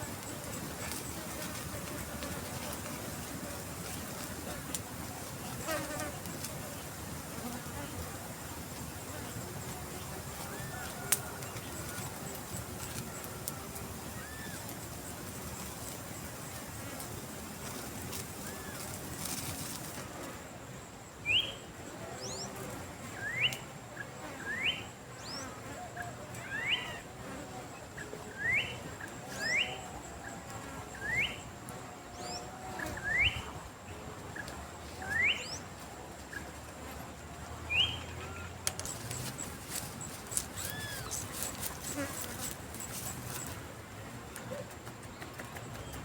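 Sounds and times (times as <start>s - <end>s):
high steady hiss: 0.0s - 26.0s.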